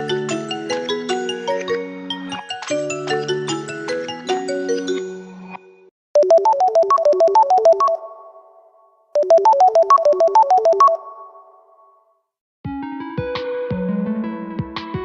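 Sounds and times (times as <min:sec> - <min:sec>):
phone ringtone synth notes: 0:06.2 - 0:11.8
lower ringtone tone: 0:06.2 - 0:12.0.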